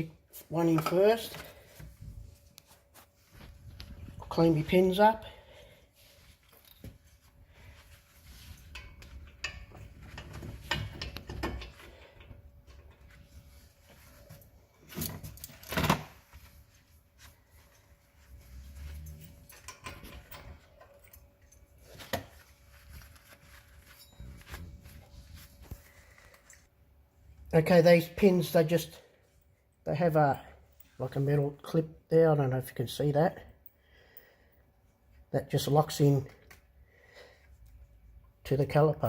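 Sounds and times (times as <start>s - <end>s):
metal parts clicking and scraping: 8.4s - 13.0s, 18.6s - 22.2s.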